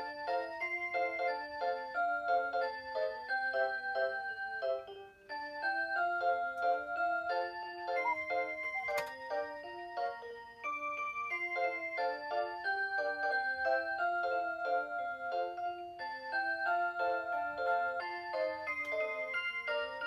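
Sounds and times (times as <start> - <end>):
alarm clock electronic melody: 0.0 - 20.0.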